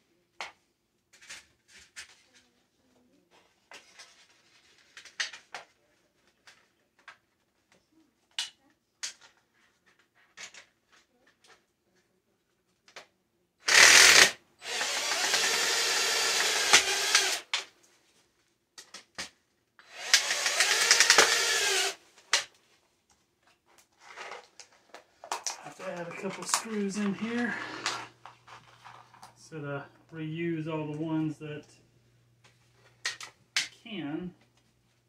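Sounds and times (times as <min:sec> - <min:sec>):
power drill running: 0:13.6 - 0:17.6, 0:19.8 - 0:22.0.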